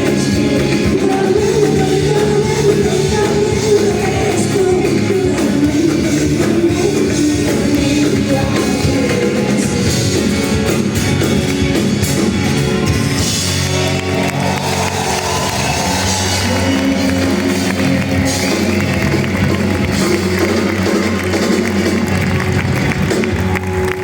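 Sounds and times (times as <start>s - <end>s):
woman singing with band: 0.0s - 10.2s.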